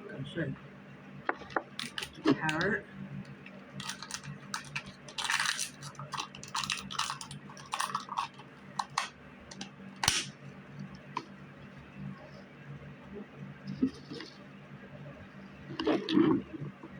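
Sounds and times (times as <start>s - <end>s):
faint steady hum: 0.0s - 16.9s
small objects rustling and clicking: 1.3s - 2.7s, 3.4s - 9.7s.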